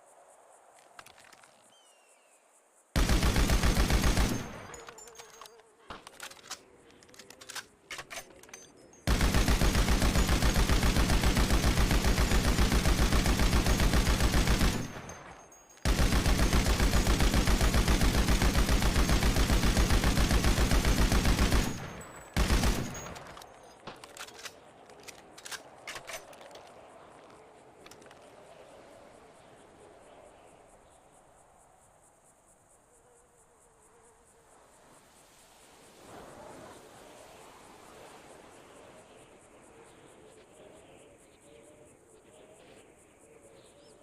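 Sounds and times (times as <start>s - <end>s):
machine gun automatic fire: 3.0s - 6.6s, 7.4s - 23.5s.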